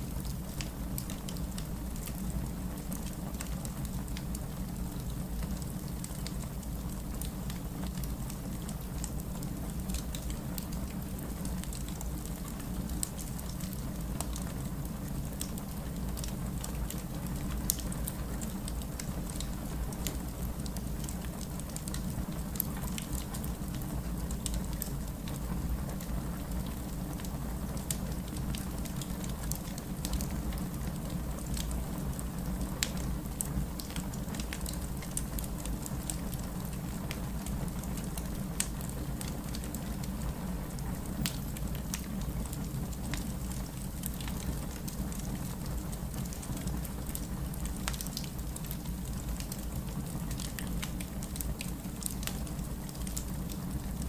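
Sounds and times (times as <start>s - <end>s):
wood fire crackling: 0.1s - 54.0s
fire popping and snapping: 2.8s - 54.0s.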